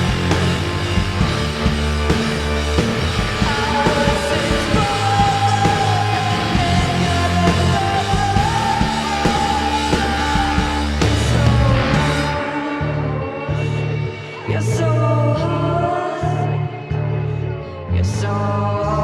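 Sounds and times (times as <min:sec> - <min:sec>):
loud rock band music: 0:00.0 - 0:14.5
bass: 0:00.0 - 0:19.0.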